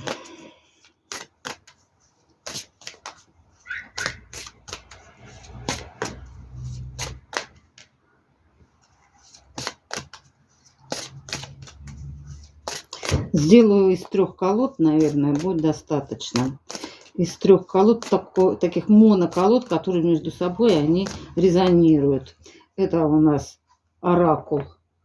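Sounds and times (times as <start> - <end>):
card decks clicking on table: 0.0 - 1.8, 2.4 - 8.0, 9.3 - 14.2, 15.0 - 19.9, 20.6 - 21.8.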